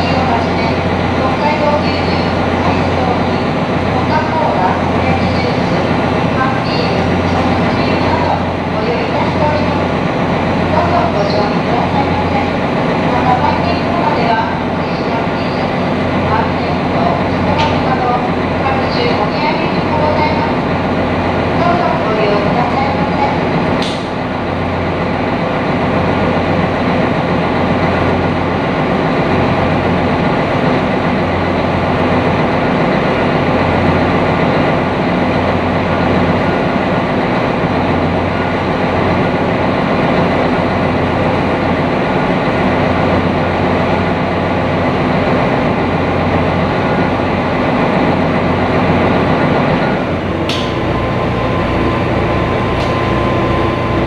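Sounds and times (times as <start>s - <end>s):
boat engine running: 0.0s - 14.0s, 49.7s - 54.0s.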